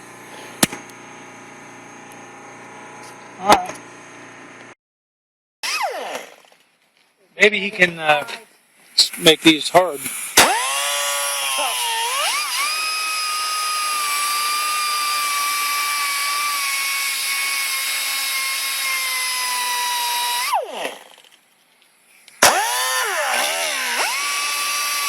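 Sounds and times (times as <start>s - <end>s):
power tool whining: 5.6s - 6.6s, 10.4s - 21.4s, 22.4s - 25.0s.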